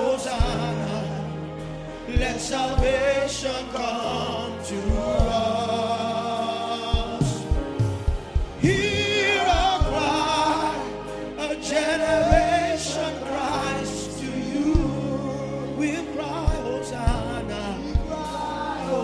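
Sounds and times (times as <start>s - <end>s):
keyboard: 0.0s - 19.0s
singers and choir: 0.0s - 19.0s
drums: 0.4s - 0.9s, 2.1s - 3.4s, 4.8s - 5.8s, 6.8s - 10.5s, 11.8s - 12.9s, 14.6s - 15.3s, 16.5s - 18.6s.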